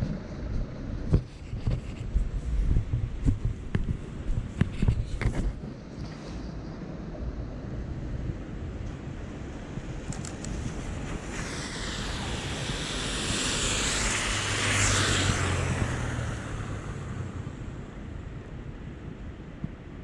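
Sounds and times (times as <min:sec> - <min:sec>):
vehicle passing hum: 0:09.0 - 0:18.9
tyres hissing on wet street: 0:09.2 - 0:18.3.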